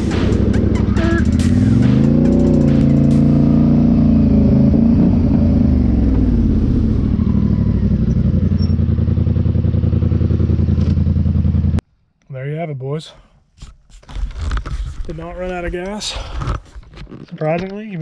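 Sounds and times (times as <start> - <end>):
atv engine running: 0.0 - 11.8.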